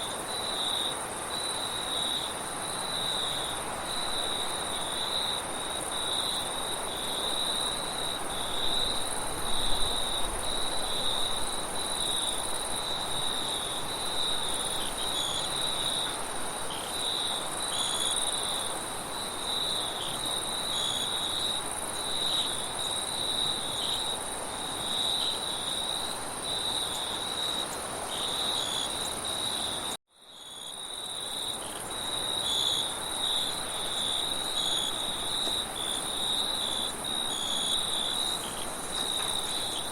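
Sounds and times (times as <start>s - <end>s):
crickets chirping: 0.0s - 39.9s
high steady insect trill: 0.0s - 39.9s
wind hiss: 0.1s - 29.9s.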